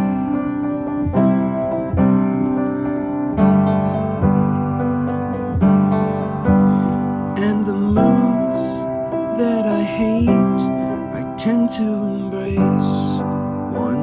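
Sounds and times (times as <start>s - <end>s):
piano chords in pop song: 0.0s - 14.0s.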